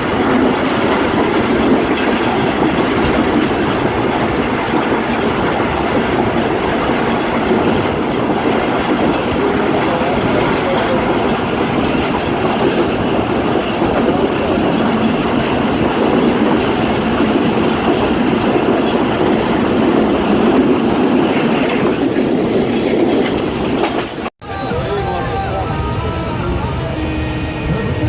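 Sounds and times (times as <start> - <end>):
train wheels rumbling on rails: 0.0 - 28.0.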